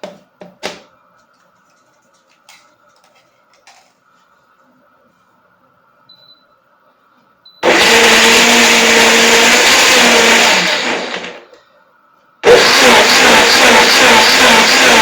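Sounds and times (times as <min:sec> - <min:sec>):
electric blender running: 0:07.6 - 0:11.5, 0:12.4 - 0:15.0.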